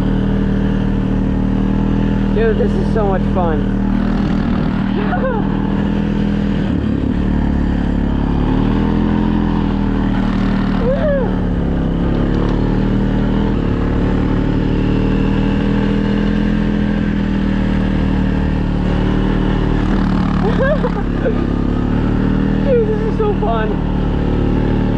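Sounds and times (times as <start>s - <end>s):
off-road vehicle engine running: 0.0s - 24.9s
person shouting: 10.8s - 11.5s.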